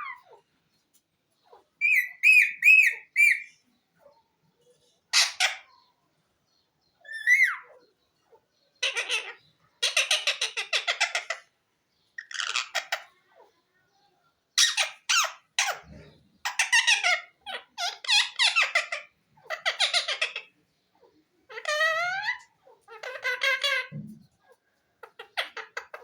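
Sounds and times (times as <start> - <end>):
parrot talking: 1.8 - 3.6, 5.1 - 5.8, 7.0 - 7.9, 8.8 - 11.5, 12.2 - 13.5, 14.6 - 24.1, 25.0 - 26.0.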